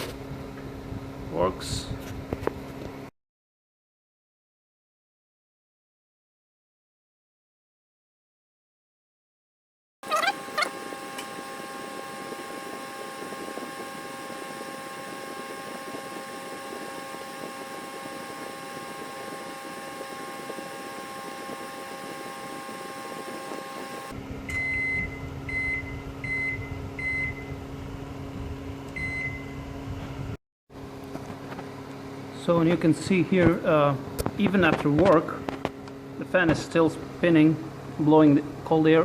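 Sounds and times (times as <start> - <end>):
cooling fan hum: 10.0 - 24.4
microwave oven beeps: 10.0 - 27.6, 28.9 - 29.7
microwave oven humming: 10.0 - 33.0.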